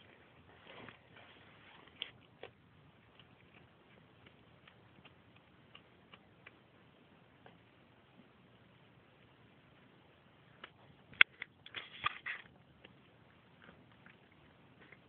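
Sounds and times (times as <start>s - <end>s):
cat crunching bones: 1.8s - 6.8s.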